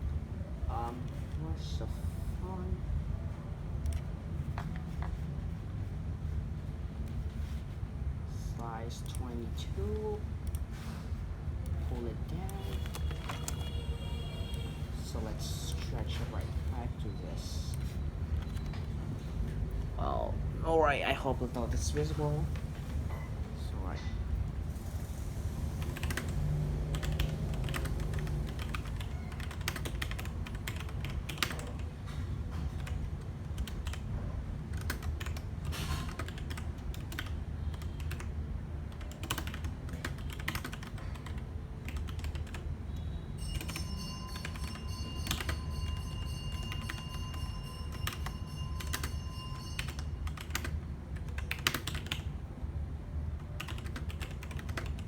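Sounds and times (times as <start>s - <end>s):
mechanical keyboard typing: 3.7s - 5.3s, 11.5s - 19.8s, 25.6s - 42.9s, 43.6s - 43.8s, 44.4s - 49.2s, 49.8s - 52.4s, 53.4s - 55.0s.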